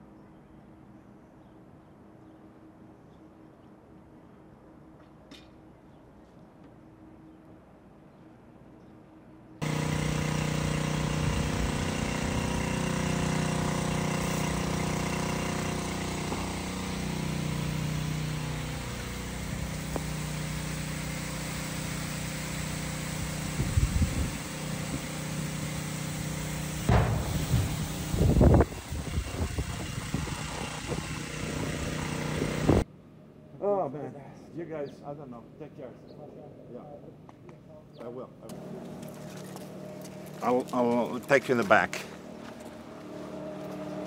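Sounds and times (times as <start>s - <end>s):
vehicle engine running: 9.6s - 32.8s, 38.5s - 44.0s
low thumps: 26.8s - 29.6s.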